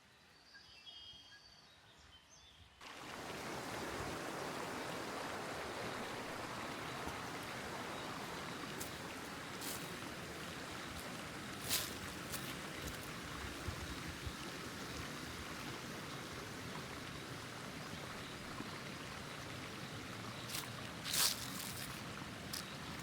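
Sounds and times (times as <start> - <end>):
faint bird chirps: 0.0 - 2.8
stream water flowing: 2.8 - 23.0.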